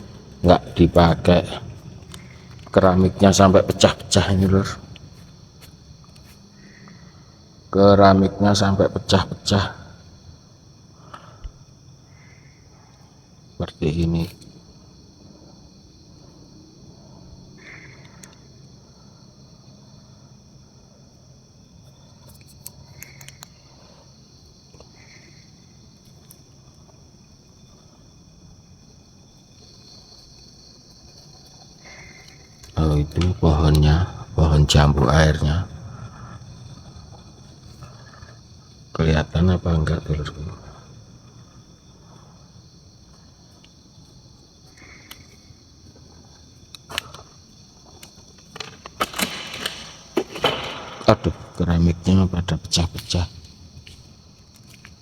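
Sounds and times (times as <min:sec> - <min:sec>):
crickets chirping: 0:00.0 - 0:55.0
faint clicks: 0:17.9 - 0:18.4, 0:22.2 - 0:23.6
sharp clicks: 0:48.5 - 0:51.7.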